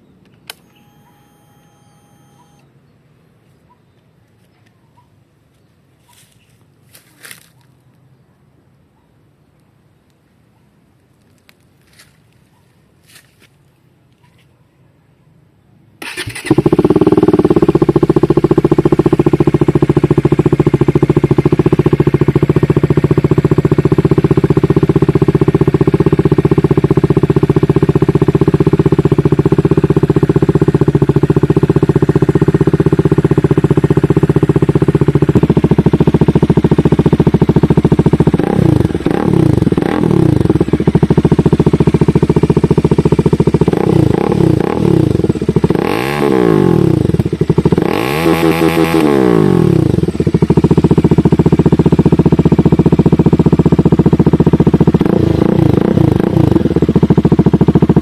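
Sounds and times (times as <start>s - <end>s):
motorcycle engine starting and idling: 0.0s - 2.9s, 15.9s - 58.0s
motorcycle engine revving: 16.0s - 58.0s.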